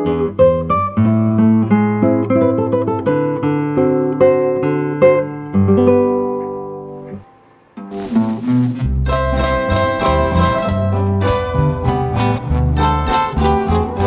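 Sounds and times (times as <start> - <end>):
acoustic plucked-string trio: 8.0 - 14.0.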